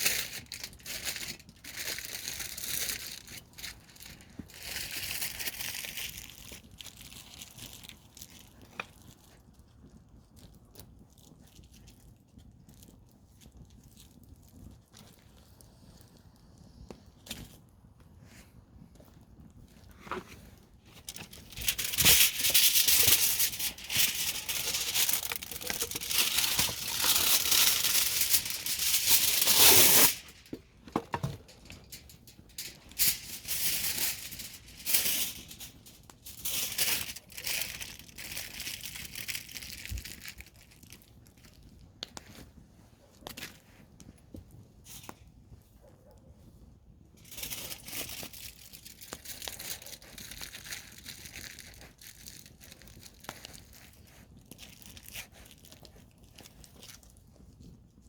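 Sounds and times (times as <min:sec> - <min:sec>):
campfire crackling and popping: 0:20.6 - 0:42.4.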